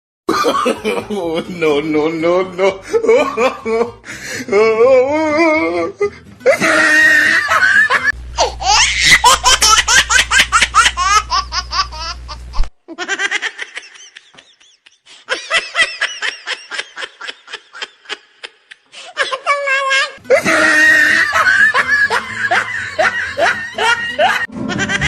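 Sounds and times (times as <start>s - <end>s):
high-pitched laughing: 5.2s - 25.0s.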